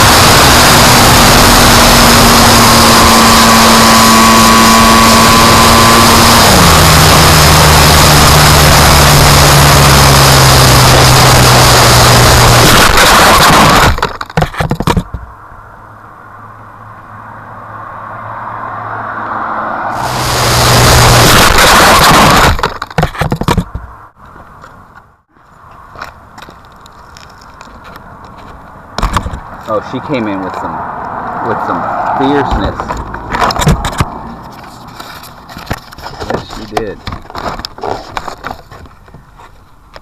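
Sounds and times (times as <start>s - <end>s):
loud rushing noise: 0.0s - 14.2s, 18.8s - 23.7s
model plane motor running: 0.0s - 14.2s
crackling burst: 5.2s - 15.2s, 19.9s - 24.0s.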